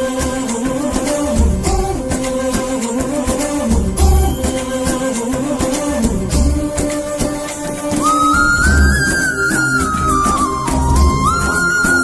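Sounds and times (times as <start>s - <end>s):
percussion beat: 0.0s - 12.0s
gliding melody: 8.0s - 12.0s.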